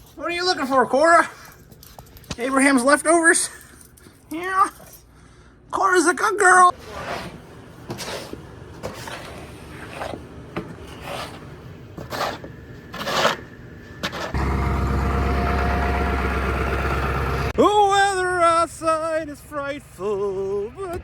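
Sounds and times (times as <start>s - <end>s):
scraping and rubbing: 6.7s - 14.4s
steady low motor hum: 7.4s - 17.6s.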